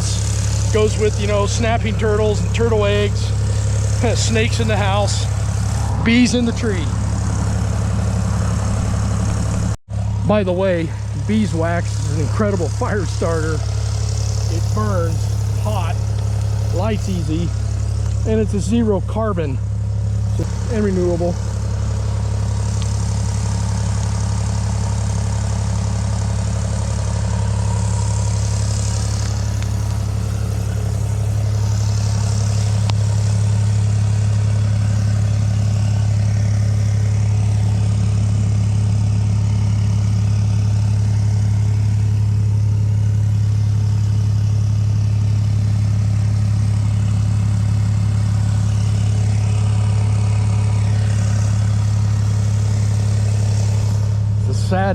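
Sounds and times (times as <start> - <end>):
diesel engine idling: 0.0 - 54.9.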